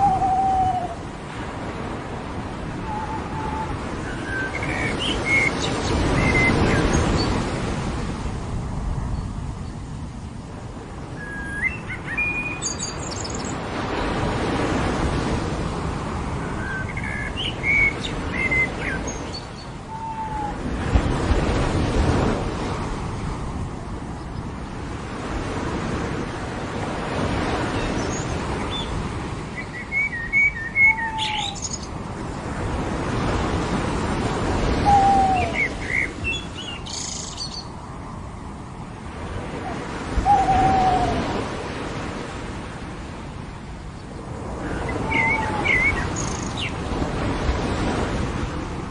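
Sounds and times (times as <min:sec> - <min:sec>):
ocean surf washing: 0:00.0 - 0:48.9
birds chirping: 0:02.8 - 0:07.4, 0:11.2 - 0:14.2, 0:16.5 - 0:20.6, 0:27.7 - 0:32.0, 0:34.7 - 0:37.8, 0:44.0 - 0:46.8
low falling bird calls: 0:27.8 - 0:31.9, 0:34.7 - 0:37.7, 0:40.2 - 0:41.4, 0:44.6 - 0:46.8.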